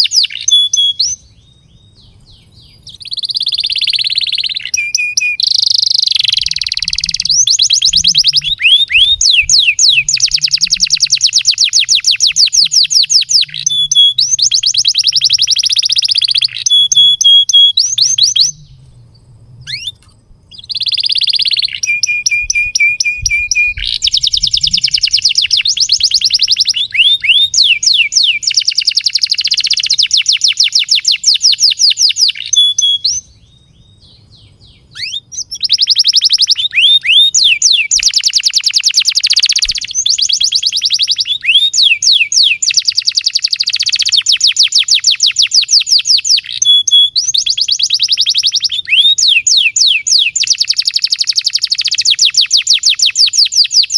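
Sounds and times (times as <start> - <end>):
canary singing trills: 0.0 - 53.9.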